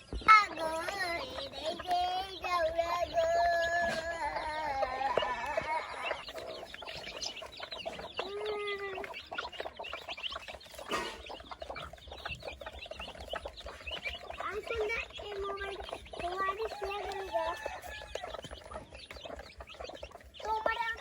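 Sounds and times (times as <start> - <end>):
high rapid chick peeps: 0.0 - 21.0
chicken wavering call: 2.8 - 7.4.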